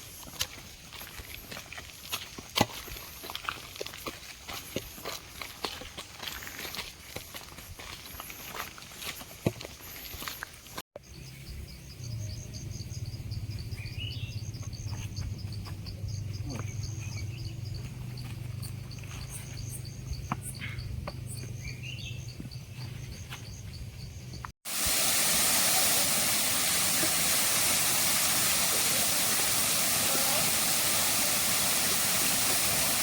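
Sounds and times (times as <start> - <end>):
insects chirping: 0.0 - 33.0.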